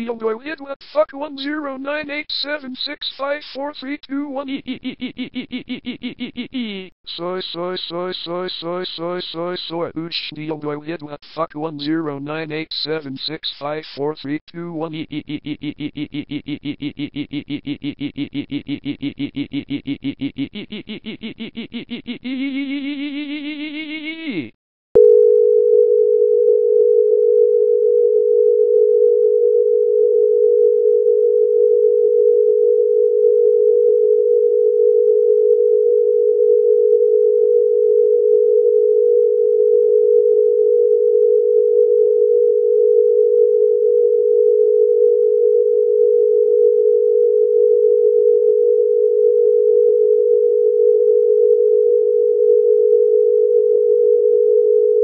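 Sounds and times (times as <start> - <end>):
steady electronic sine tone: 26.0 - 55.0.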